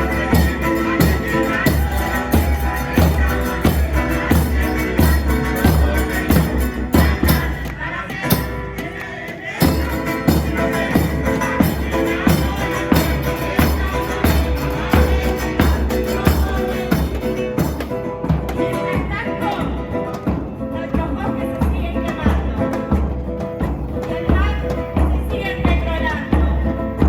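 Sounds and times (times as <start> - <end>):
music with driving beat and bass: 0.0 - 8.9, 9.6 - 27.0.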